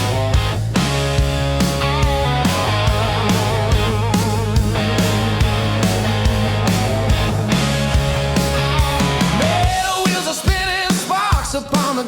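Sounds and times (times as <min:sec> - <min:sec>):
rock music: 0:00.0 - 0:12.0.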